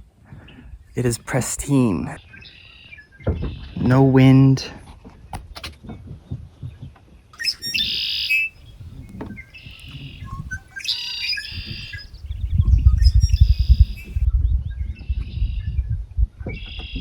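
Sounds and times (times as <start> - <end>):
songbirds singing: 7.4 - 14.3
low microphone rumble: 7.6 - 16.4.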